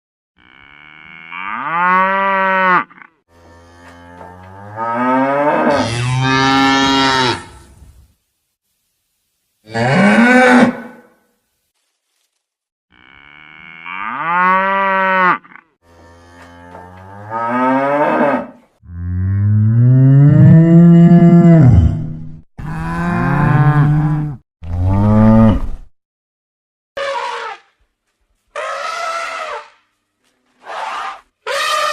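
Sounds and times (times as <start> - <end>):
cattle mooing: 0.4 - 7.5, 12.9 - 21.9.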